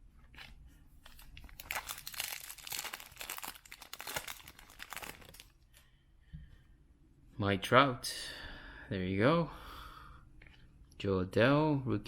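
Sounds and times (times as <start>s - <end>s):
foil wrapper crinkling and tearing: 1.1s - 5.5s.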